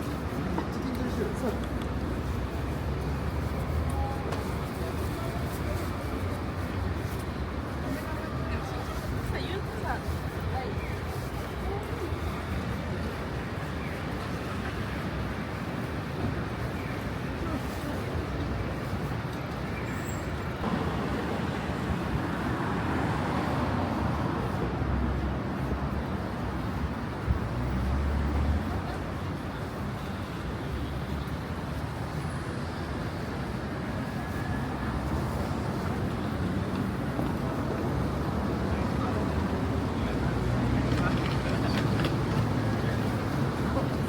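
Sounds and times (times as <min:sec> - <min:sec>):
passing vehicles rumbling: 0:00.0 - 0:44.0
traffic noise: 0:00.0 - 0:44.0.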